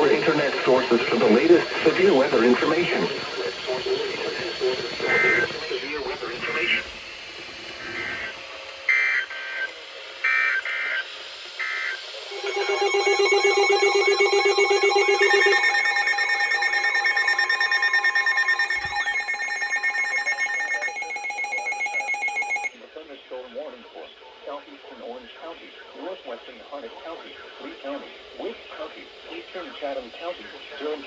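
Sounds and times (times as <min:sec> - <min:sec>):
layered alert tone with warbling beeps: 0:12.3 - 0:22.7
screeching digital data bursts: 0:12.3 - 0:22.7.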